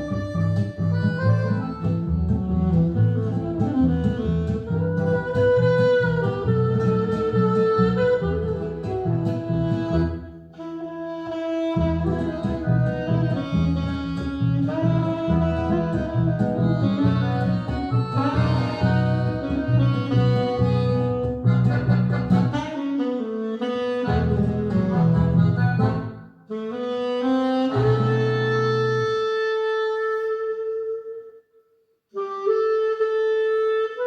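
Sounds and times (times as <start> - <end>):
pulsing bass line: 0.0 - 10.2, 11.8 - 22.7
jazz saxophone lead: 0.0 - 34.0.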